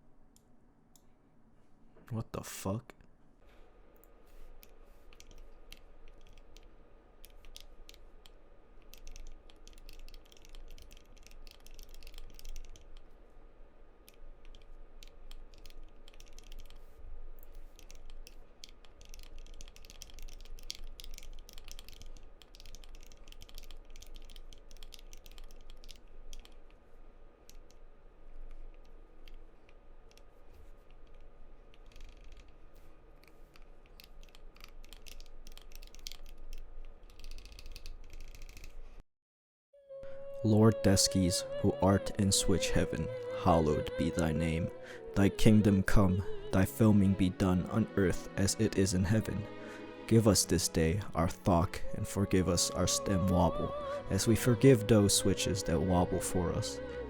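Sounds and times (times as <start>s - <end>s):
faint steady hum: 0.0s - 39.0s, 39.8s - 57.0s
mechanical keyboard typing: 4.6s - 13.2s, 14.0s - 26.8s, 27.4s - 38.9s.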